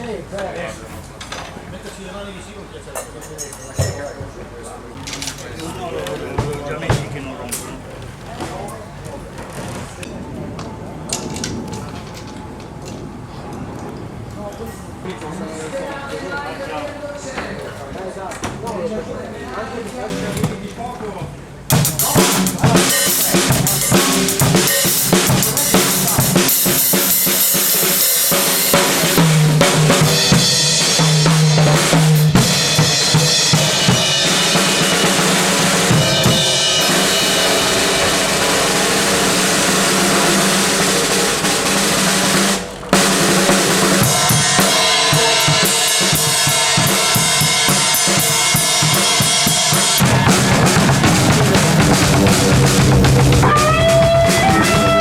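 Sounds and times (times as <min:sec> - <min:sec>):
drum kit playing: 0:05.0 - 0:08.3, 0:21.7 - 0:55.0.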